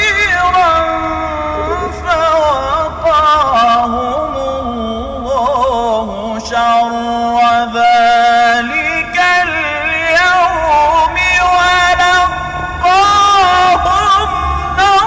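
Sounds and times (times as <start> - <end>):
man chanting melodically: 0.0 - 15.0.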